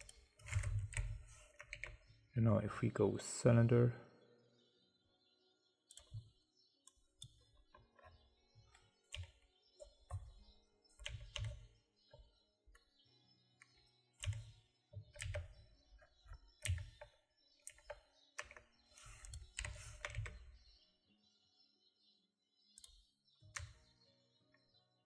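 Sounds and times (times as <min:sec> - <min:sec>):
keystrokes on computer keyboard: 0:00.0 - 0:02.1, 0:05.9 - 0:12.2, 0:13.6 - 0:20.6, 0:22.8 - 0:23.8.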